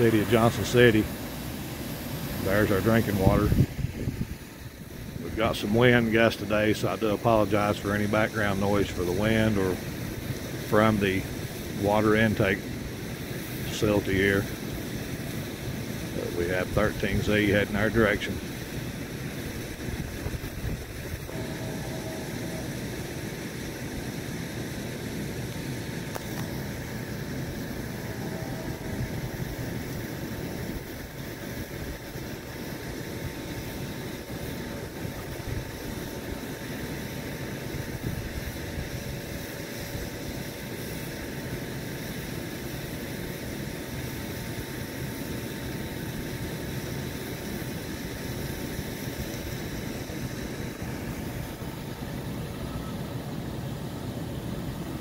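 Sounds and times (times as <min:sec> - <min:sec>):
pumping facility hum: 0:00.0 - 0:55.0
thin steady whine: 0:00.0 - 0:55.0
wind gusting on microphone: 0:02.0 - 0:05.7, 0:18.8 - 0:21.4.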